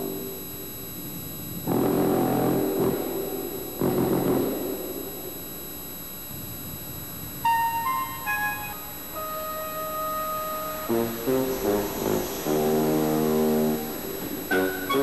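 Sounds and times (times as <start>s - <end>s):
long held tone: 5.0s - 15.0s
electronic keyboard notes: 7.4s - 15.0s
deep brass-like blasts: 10.3s - 15.0s.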